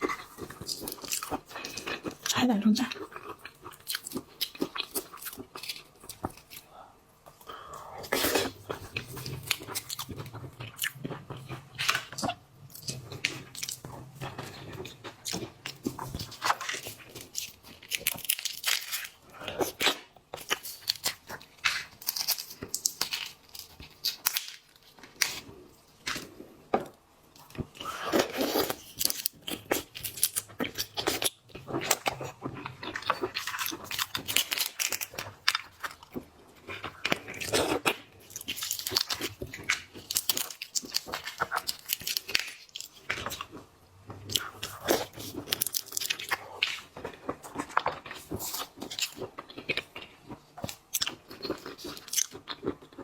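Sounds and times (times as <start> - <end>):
crunching and chewing seafood: 0.0 - 53.0.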